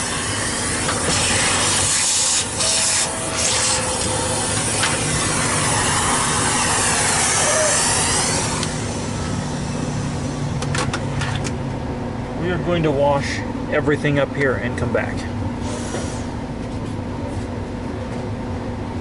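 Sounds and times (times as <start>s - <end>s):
compressed air hissing: 0.0s - 10.6s, 15.6s - 16.4s.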